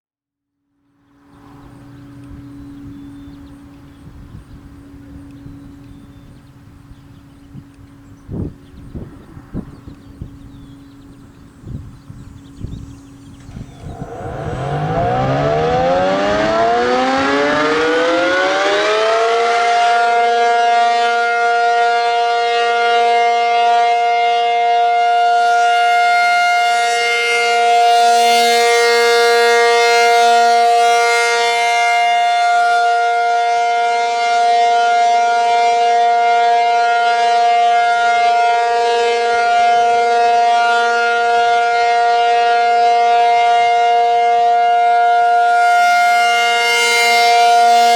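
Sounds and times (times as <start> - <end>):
dual-tone warning siren: 10.2 - 47.9.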